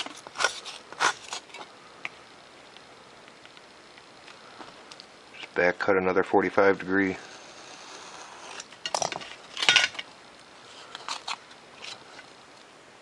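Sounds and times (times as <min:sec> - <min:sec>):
knife scraping through foam: 0:07.2 - 0:08.7
faint ticks and scrapes: 0:10.4 - 0:12.7.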